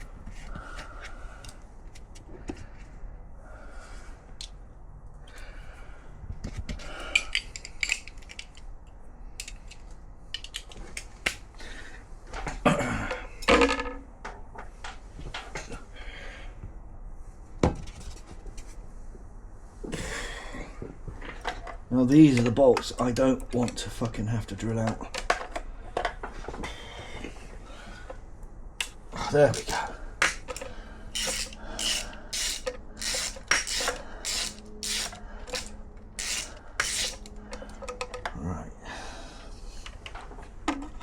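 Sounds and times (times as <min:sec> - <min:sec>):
hand tools clanking on metal: 0:29.3 - 0:38.4.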